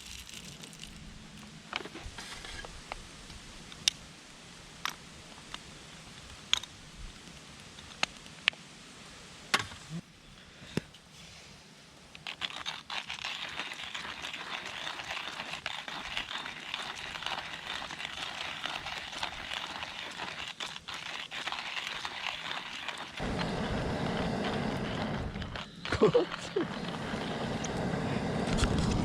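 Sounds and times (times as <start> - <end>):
wood fire crackling and hissing: 0.0 - 29.0.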